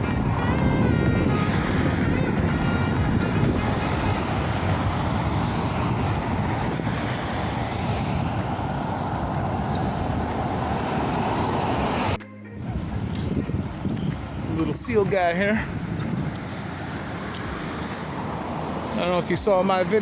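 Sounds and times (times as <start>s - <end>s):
ocean surf: 0.0s - 12.9s
wind buffeting microphone: 0.0s - 20.0s.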